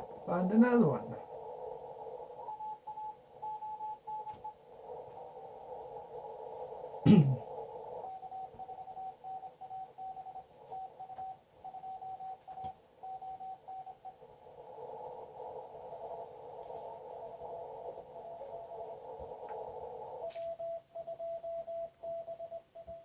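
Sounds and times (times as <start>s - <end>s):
morse code signal: 0.0s - 4.6s, 6.8s - 14.2s, 15.4s - 23.0s
radio band noise hiss: 0.0s - 11.7s, 12.7s - 20.9s
faint morse code station: 0.3s - 4.6s, 7.4s - 14.2s, 20.2s - 23.0s.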